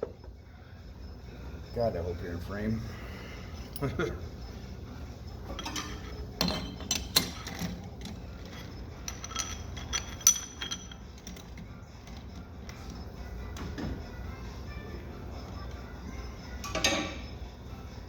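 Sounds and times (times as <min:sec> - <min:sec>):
ringing metal clink: 0:05.5 - 0:07.6, 0:08.5 - 0:11.4.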